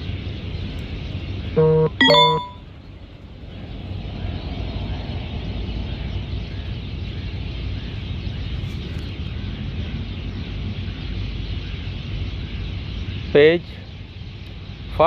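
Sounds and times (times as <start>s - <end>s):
faint high chirp: 2.0s - 2.6s.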